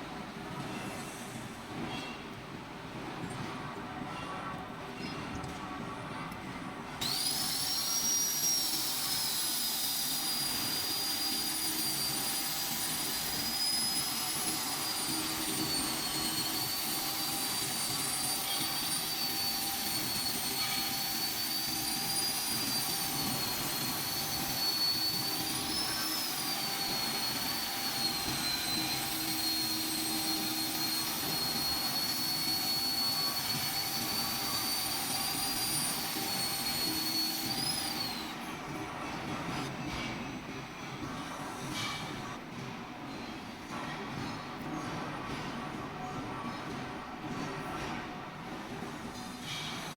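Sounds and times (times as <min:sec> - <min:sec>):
grinder motor whine: 0:07.0 - 0:38.3
grinding hiss: 0:07.0 - 0:38.3.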